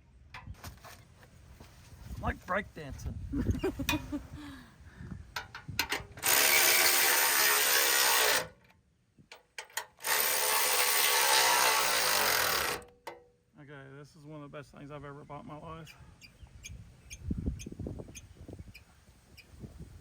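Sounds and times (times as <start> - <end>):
impact wrench bursts: 5.8 - 8.6, 9.9 - 12.9.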